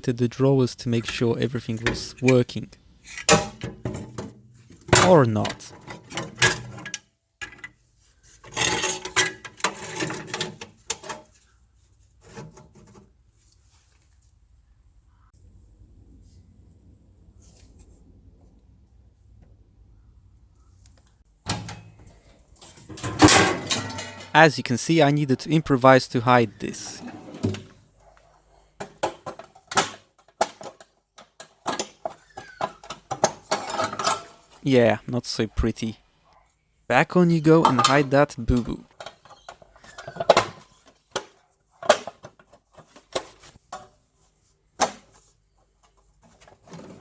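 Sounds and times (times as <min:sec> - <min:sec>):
drawer scraping along rails: 0:08.4 - 0:11.3, 0:26.9 - 0:27.8
metal parts clicking and knocking: 0:08.4 - 0:11.3, 0:22.7 - 0:24.4.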